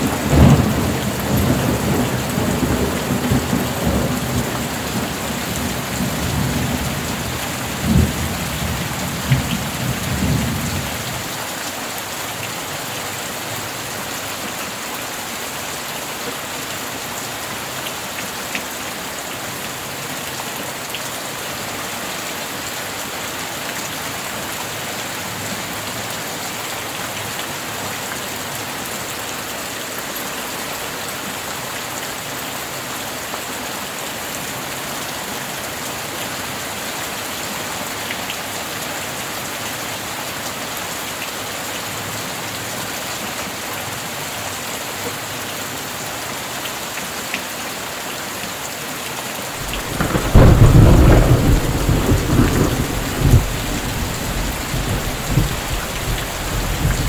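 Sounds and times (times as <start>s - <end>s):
thunder rumbling: 0.0s - 11.0s, 49.6s - 57.0s
heavy rain: 0.0s - 57.0s.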